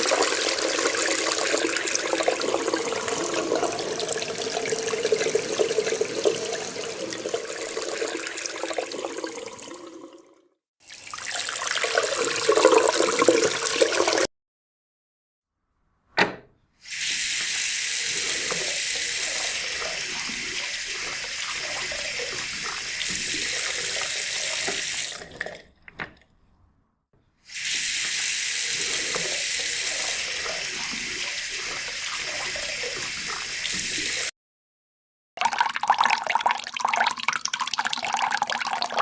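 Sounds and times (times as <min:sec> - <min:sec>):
water running from a tap: 0:00.0 - 0:14.3, 0:16.8 - 0:25.6, 0:27.5 - 0:34.3.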